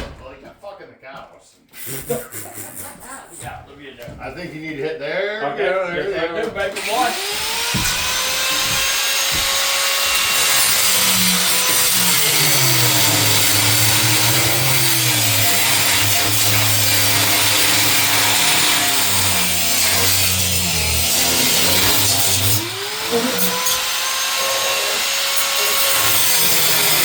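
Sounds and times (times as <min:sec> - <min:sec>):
power tool cutting steel: 0:06.7 - 0:27.0.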